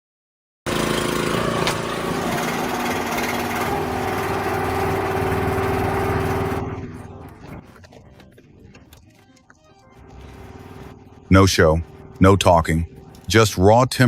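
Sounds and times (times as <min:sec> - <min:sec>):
small engine rattling: 0:00.7 - 0:08.9.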